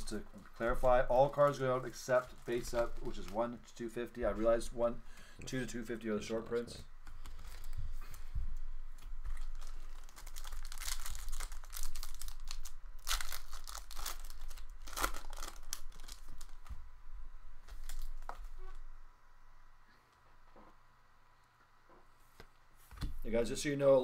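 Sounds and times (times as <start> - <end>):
card pack wrappers crinkling and tearing: 0.6 - 3.7, 7.0 - 8.2, 9.0 - 16.8, 17.7 - 18.6.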